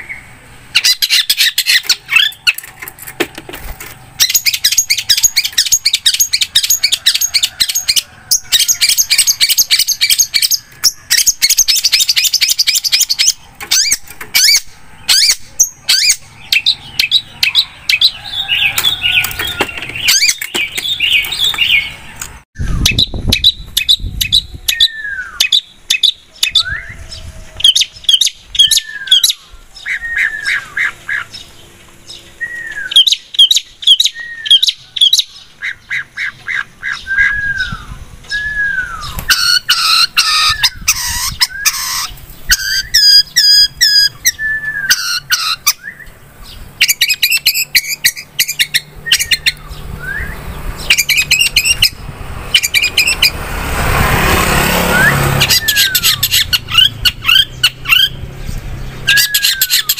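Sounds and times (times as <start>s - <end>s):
bird singing whistles and trills: 22.6s - 31.5s, 32.1s - 46.2s, 46.8s - 53.3s, 54.9s - 58.2s, 59.0s - 59.9s.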